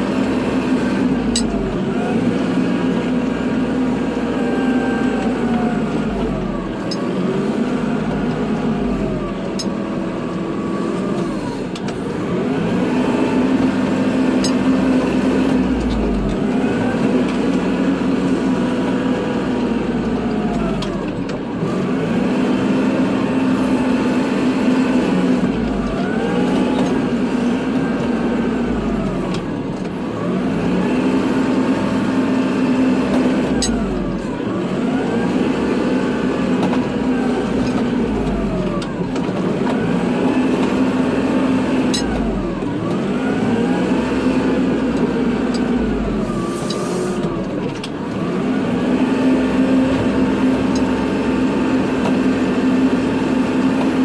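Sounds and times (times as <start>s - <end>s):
tractor diesel engine: 0.0s - 54.0s.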